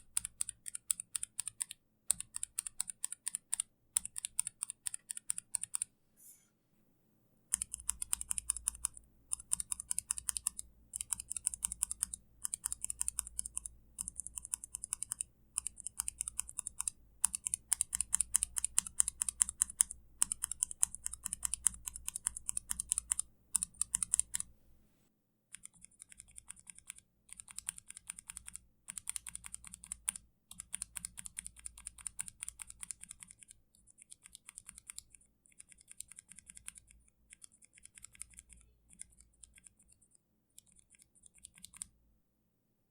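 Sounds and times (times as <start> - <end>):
mechanical keyboard switches clicking: 0.0 - 5.9, 7.5 - 24.5, 40.6 - 41.9.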